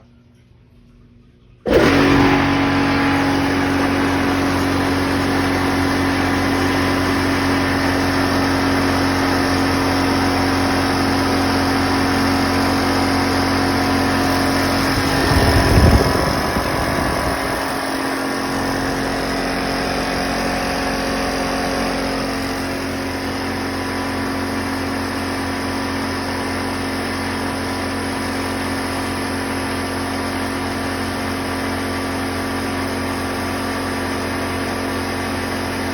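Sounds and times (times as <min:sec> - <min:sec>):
air compressor running: 0:01.6 - 0:35.9.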